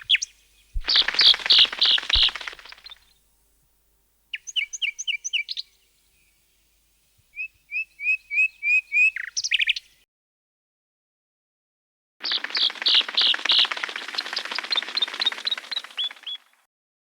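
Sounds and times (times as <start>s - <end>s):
bird chirping: 0.0s - 3.3s, 4.3s - 10.0s, 12.2s - 16.5s.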